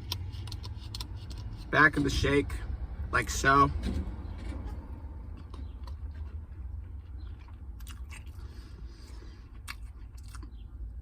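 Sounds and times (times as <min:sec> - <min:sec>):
close-up chewing and biting: 0:00.0 - 0:01.7, 0:05.3 - 0:10.6.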